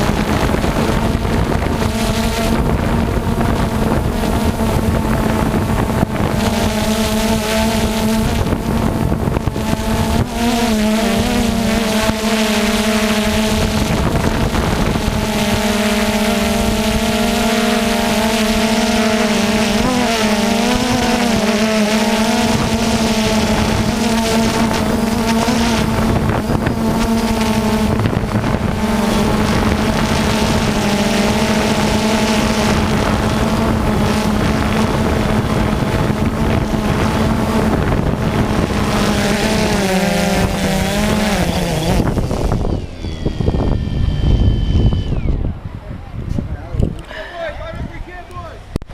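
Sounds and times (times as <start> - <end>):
small engine humming: 0.0 - 45.7.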